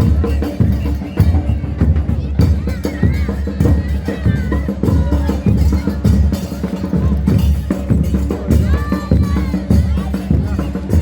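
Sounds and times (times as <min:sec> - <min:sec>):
loud music with drum beat: 0:00.0 - 0:11.0
voices: 0:00.0 - 0:11.0.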